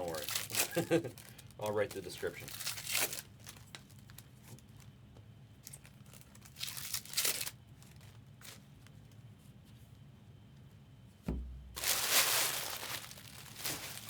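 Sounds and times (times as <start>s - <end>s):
wrapper tearing and crinkling: 0.0s - 4.9s, 5.6s - 8.6s, 11.7s - 14.0s
faint small crackles: 0.0s - 9.3s, 11.8s - 14.0s.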